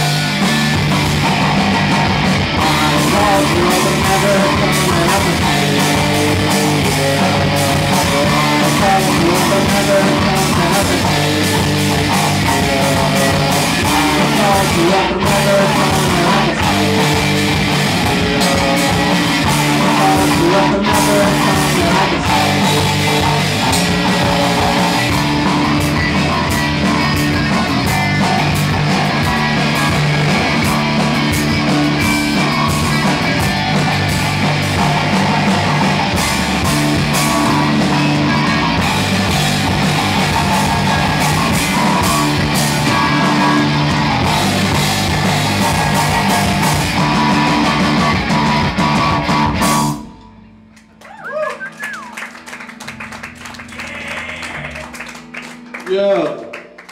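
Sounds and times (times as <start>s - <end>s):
electric guitar: 0.0s - 56.9s
live rock band: 0.0s - 56.9s.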